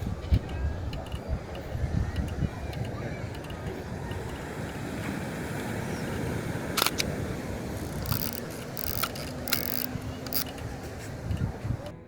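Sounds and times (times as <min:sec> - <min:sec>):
outdoor background noise: 0:00.0 - 0:12.0
camera shutter clack: 0:06.8 - 0:07.1, 0:07.8 - 0:10.5
short mechanical rasps: 0:07.8 - 0:11.1.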